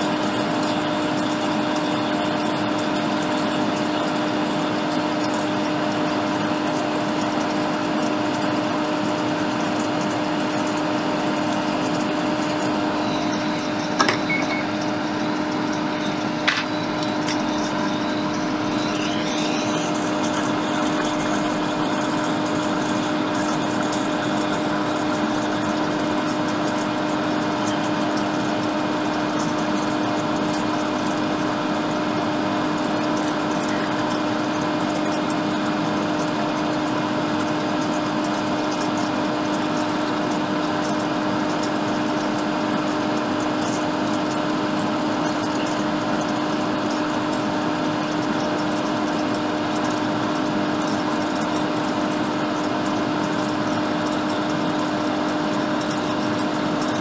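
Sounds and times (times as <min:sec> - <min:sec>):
hot air station fan hissing: 0:00.0 - 0:37.4.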